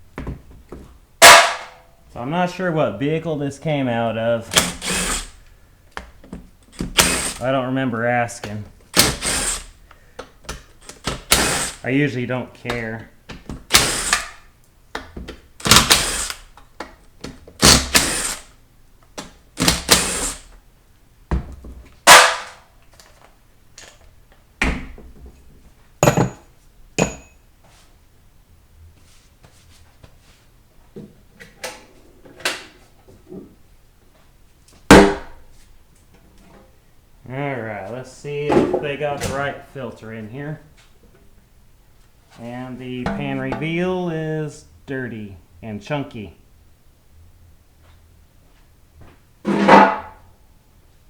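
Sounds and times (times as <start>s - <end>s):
metal parts knocking and clattering: 26.0s - 26.4s.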